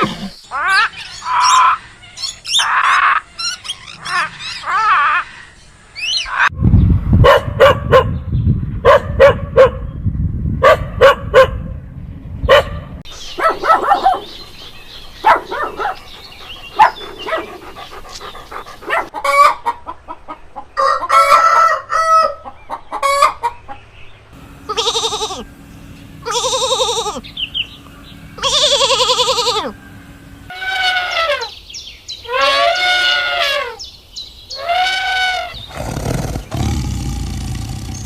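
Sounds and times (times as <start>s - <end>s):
rooster crowing: 20.8s - 22.4s
chickens clucking: 24.4s - 30.8s.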